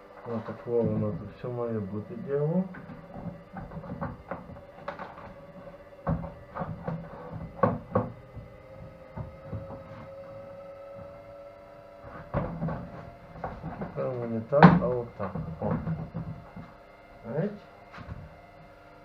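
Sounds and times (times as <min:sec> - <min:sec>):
faint steady hum: 0:00.0 - 0:19.0
plastic clicks and knocks: 0:02.7 - 0:11.2, 0:12.1 - 0:16.8.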